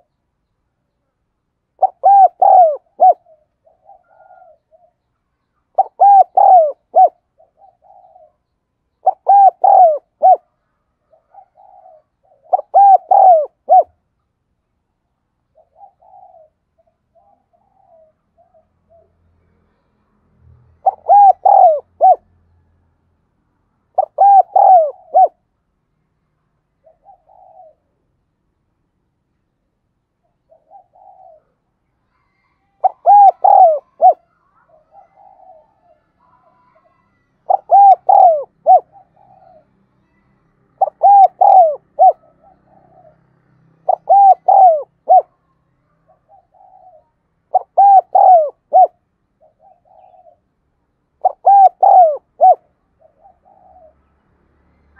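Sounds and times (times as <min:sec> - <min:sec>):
dove cooing: 0:01.8 - 0:05.1, 0:05.7 - 0:14.0, 0:15.5 - 0:19.1, 0:20.8 - 0:22.2, 0:23.9 - 0:25.4, 0:26.8 - 0:28.0, 0:30.2 - 0:39.8, 0:40.7 - 0:45.4, 0:46.0 - 0:50.5, 0:51.2 - 0:54.0.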